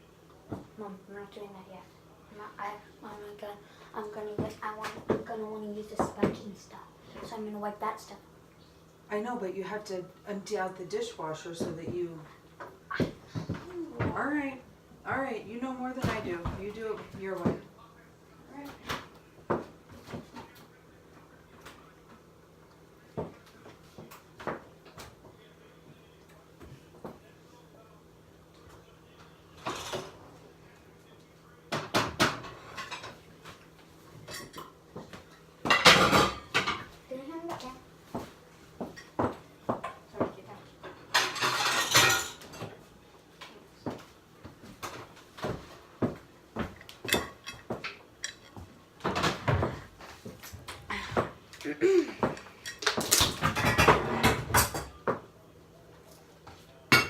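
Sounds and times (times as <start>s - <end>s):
dishes clinking: 31.8s - 33.6s, 34.2s - 37.0s, 38.8s - 42.7s, 46.6s - 49.7s.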